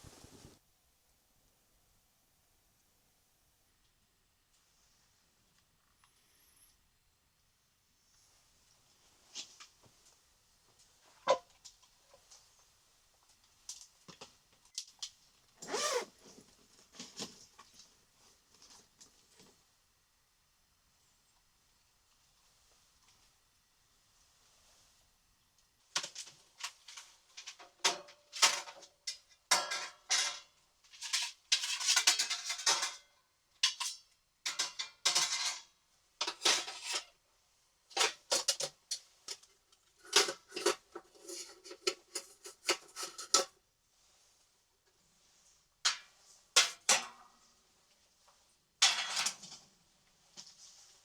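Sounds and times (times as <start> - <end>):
metal cookware clinking: 27.4 - 33.0, 33.6 - 37.1.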